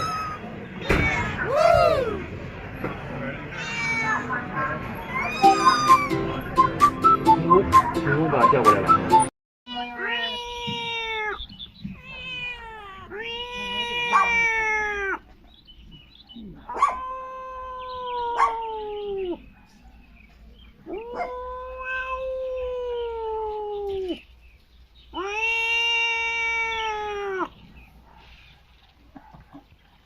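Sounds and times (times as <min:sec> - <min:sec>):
pet yowling: 0:00.0 - 0:02.2, 0:05.0 - 0:06.2, 0:12.0 - 0:15.2, 0:16.4 - 0:19.4, 0:20.8 - 0:24.2, 0:25.1 - 0:27.5.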